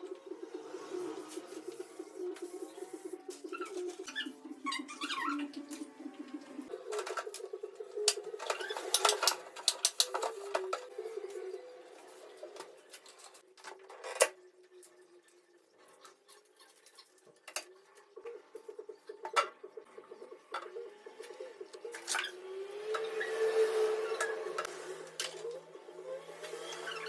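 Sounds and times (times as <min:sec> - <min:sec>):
items clicking and clinking: 0:06.9 - 0:10.9.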